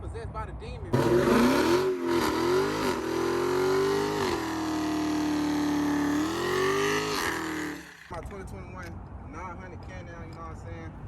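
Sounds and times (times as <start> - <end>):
car engine revving: 1.0 - 8.1.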